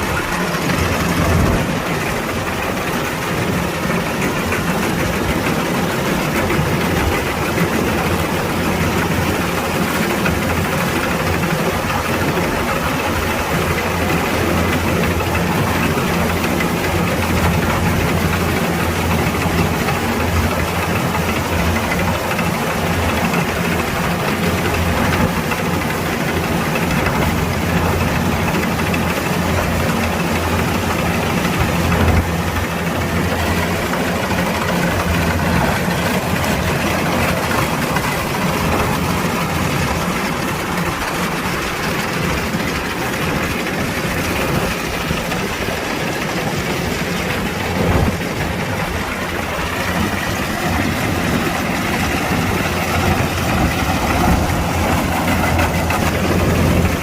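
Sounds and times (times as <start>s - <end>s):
combine harvester diesel engine: 0.0s - 57.0s.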